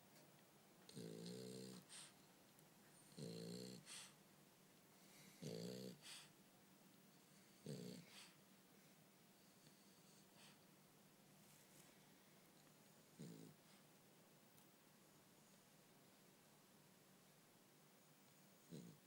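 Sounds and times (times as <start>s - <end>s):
dog snoring: 0.9s - 2.1s, 3.0s - 4.1s, 5.1s - 6.3s, 7.3s - 8.4s, 13.1s - 13.8s, 18.6s - 19.0s.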